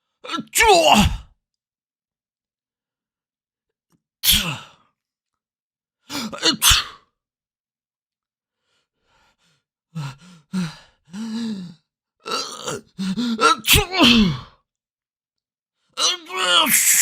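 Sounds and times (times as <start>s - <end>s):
person sneezing: 4.2s - 4.7s, 6.4s - 7.0s, 13.5s - 14.5s, 16.6s - 17.0s.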